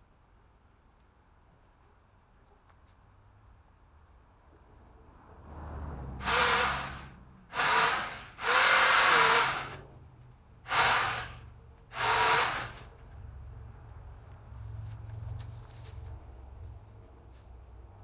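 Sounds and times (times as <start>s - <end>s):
pole saw motor whining: 6.2s - 9.8s, 10.7s - 12.9s.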